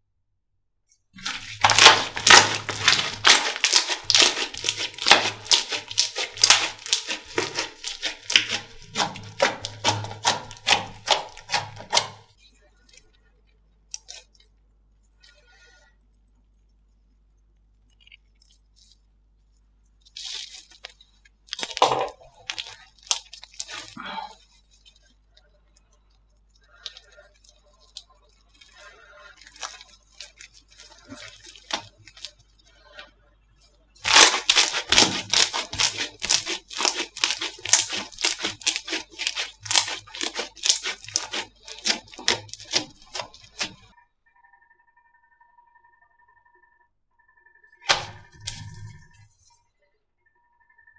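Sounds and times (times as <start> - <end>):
slime sticky pops and crackles: 1.2 - 12.2, 20.2 - 24.0, 34.0 - 43.8, 47.9 - 48.9.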